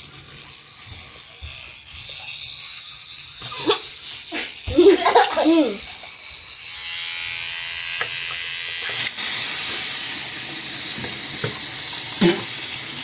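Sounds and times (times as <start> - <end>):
electric toothbrush buzz: 0.0 - 13.0
tap running into sink: 10.9 - 12.4.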